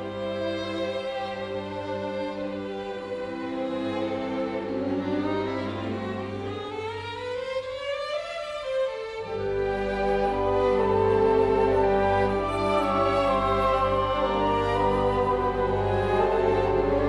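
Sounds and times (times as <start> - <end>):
bowed strings music: 0.0 - 17.0.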